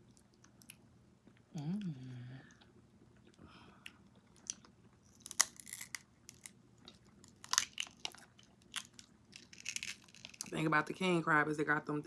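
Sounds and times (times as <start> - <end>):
crab shells cracking: 4.3 - 10.6.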